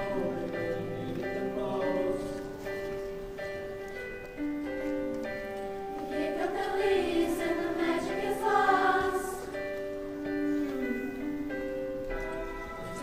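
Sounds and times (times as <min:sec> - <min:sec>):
choir singing held chords: 0:00.0 - 0:02.8, 0:06.0 - 0:13.0.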